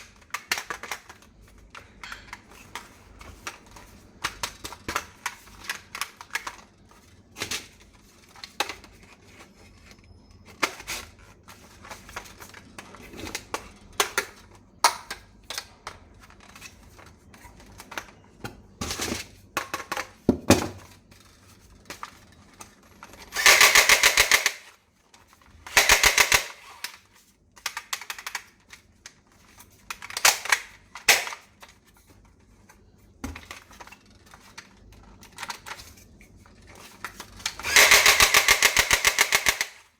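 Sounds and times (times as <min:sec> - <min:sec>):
toy rifle firing rapid clicks: 0:23.4 - 0:24.7, 0:25.7 - 0:26.7, 0:30.2 - 0:31.4, 0:37.6 - 0:39.9
toy rifle handling clicks: 0:23.4 - 0:24.8, 0:25.7 - 0:27.0, 0:29.9 - 0:31.5, 0:37.4 - 0:39.9.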